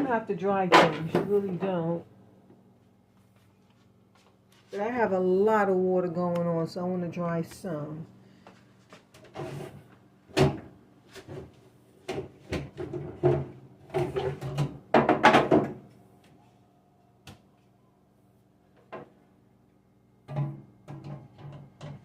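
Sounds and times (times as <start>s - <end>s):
plastic bins knocking and clattering: 11.3s - 15.8s.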